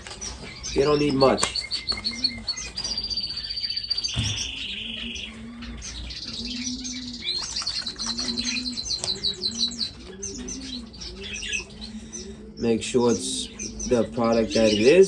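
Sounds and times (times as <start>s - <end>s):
finches chirping and twittering: 0.0s - 15.0s.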